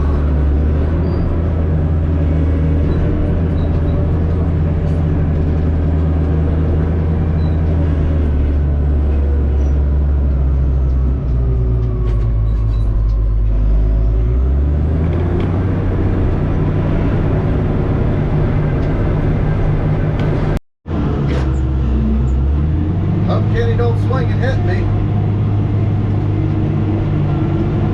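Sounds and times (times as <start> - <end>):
heavy diesel engine running: 0.0 - 27.9.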